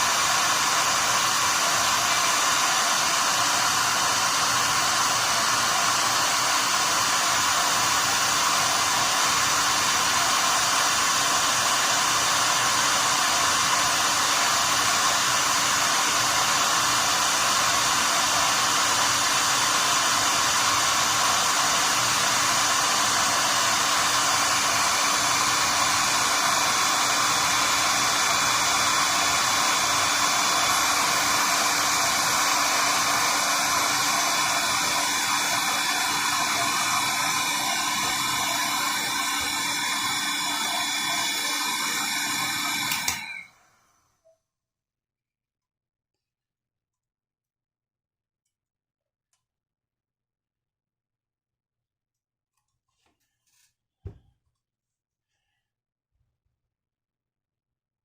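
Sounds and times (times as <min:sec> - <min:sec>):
heat gun fan blowing: 0:00.0 - 0:43.5
faint high whistle: 0:43.2 - 0:44.4.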